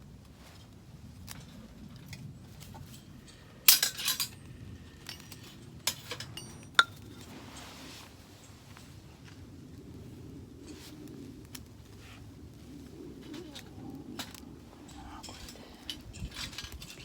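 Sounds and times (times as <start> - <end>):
metal objects clinking: 3.3 - 7.2.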